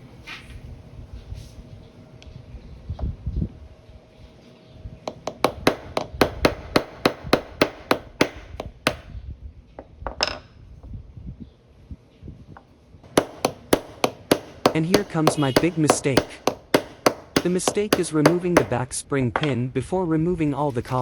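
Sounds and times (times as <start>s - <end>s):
hammer tapping a pin punch: 5.1s - 9.1s, 13.1s - 18.8s.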